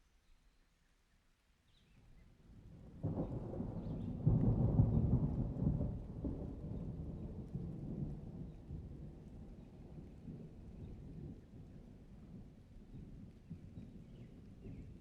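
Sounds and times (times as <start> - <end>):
thunder rumbling: 3.0 - 11.5.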